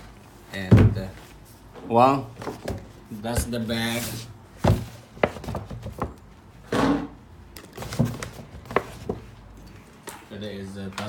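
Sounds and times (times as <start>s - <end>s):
knocks and taps on packaging: 4.6s - 6.2s.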